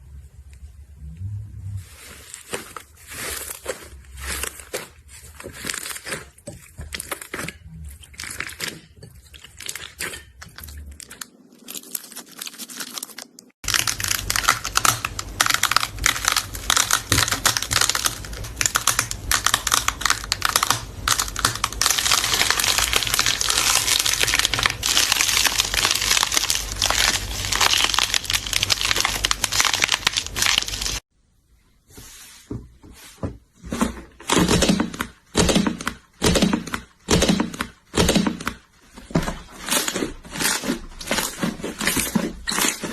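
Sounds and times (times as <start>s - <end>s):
slime crackling and popping: 2.4s - 31.0s.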